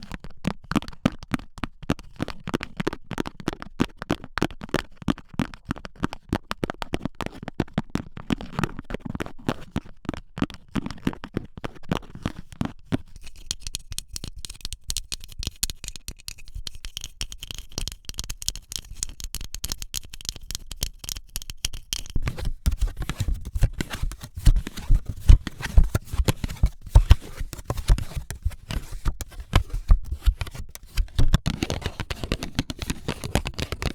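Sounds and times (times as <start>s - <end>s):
fingernails scratching and rubbing: 13.2s - 33.9s.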